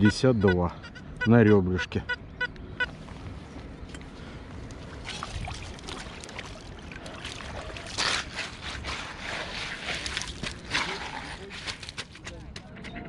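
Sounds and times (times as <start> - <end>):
wind rumble on microphone: 2.6 - 13.0
water sloshing and splashing: 3.9 - 12.2.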